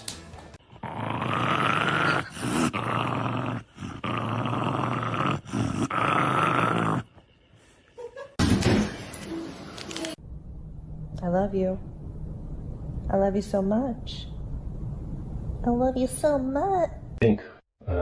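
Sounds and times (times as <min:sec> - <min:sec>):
dog growling: 0:00.7 - 0:07.2.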